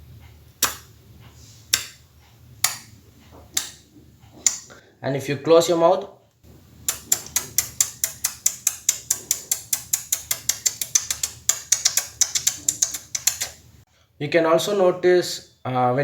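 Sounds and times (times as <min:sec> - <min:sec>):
beatbox tongue clicks: 0:00.6 - 0:00.9, 0:06.8 - 0:13.6.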